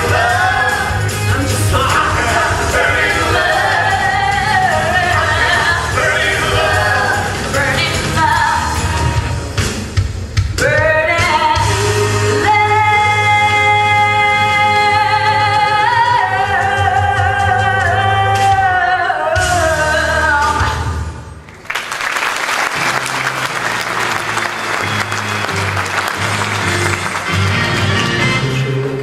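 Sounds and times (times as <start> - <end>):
live band playing: 0.0 - 21.4, 22.4 - 29.0
audience applause and cheering: 21.4 - 29.0.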